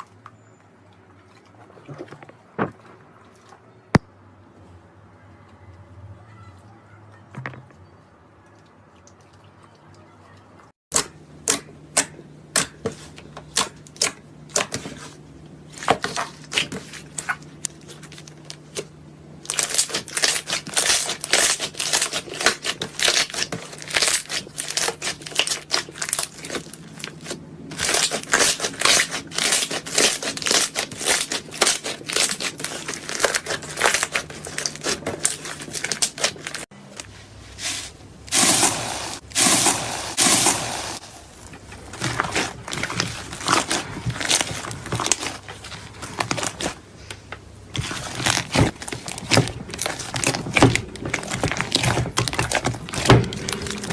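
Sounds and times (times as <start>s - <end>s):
slime popping and crackling: 19.5s - 36.7s.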